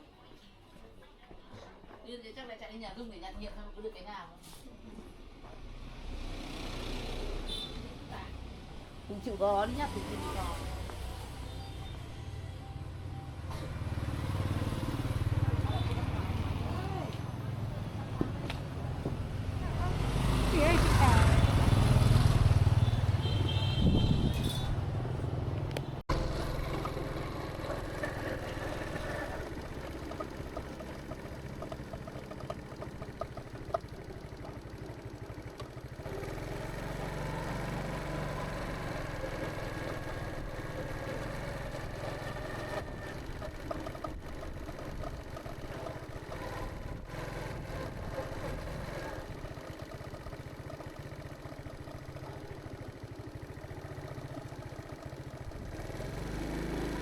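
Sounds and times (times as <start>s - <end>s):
street noise: 0.0s - 57.0s
motorbike engine: 5.7s - 57.0s
low engine rumble: 15.0s - 55.8s.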